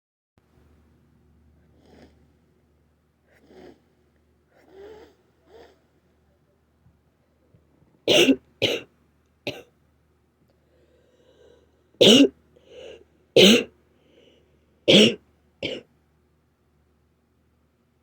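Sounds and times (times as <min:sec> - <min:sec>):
person coughing: 0:08.1 - 0:08.9, 0:09.5 - 0:09.7, 0:12.0 - 0:13.7, 0:14.9 - 0:15.9.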